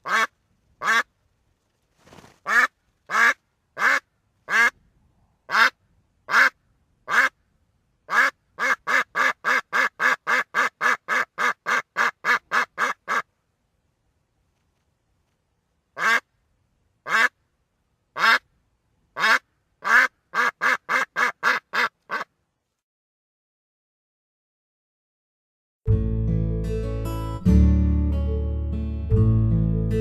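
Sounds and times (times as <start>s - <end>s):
duck quacking: 0.0s - 1.1s, 2.4s - 4.8s, 5.5s - 7.4s, 8.1s - 13.3s, 16.0s - 16.3s, 17.0s - 17.4s, 18.2s - 18.5s, 19.2s - 22.3s.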